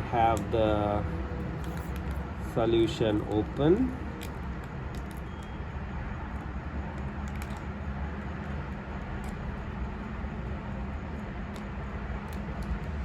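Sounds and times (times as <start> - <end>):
plastic being handled: 1.4 - 5.6.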